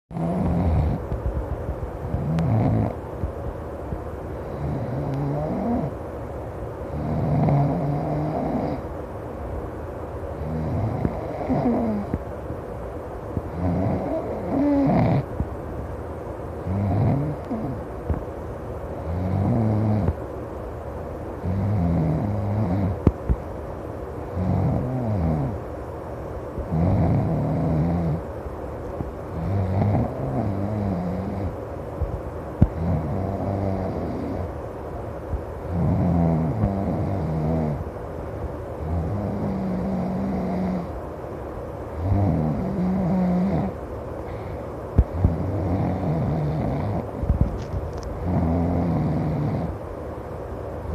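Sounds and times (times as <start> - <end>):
person snoring loudly: 0.2 - 1.0, 4.5 - 5.9, 6.9 - 8.8, 10.4 - 12.2, 13.6 - 15.3, 35.7 - 37.8.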